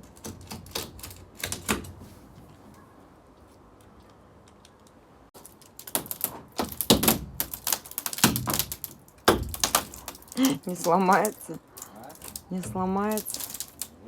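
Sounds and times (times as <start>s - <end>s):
plastic panel cracking: 0.0s - 2.0s, 5.4s - 14.0s.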